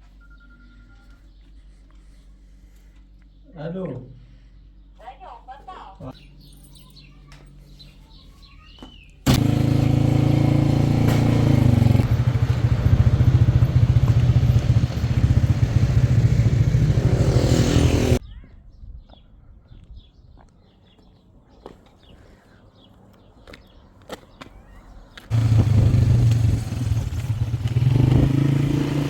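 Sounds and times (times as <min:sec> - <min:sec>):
motorcycle engine running: 0:09.3 - 0:18.2, 0:25.3 - 0:29.0.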